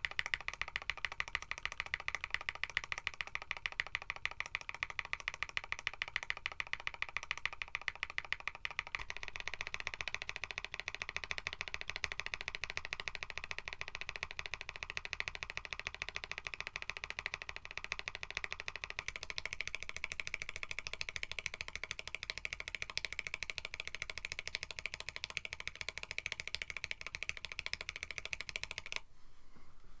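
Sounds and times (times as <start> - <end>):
mechanical keyboard typing: 0.0 - 29.0.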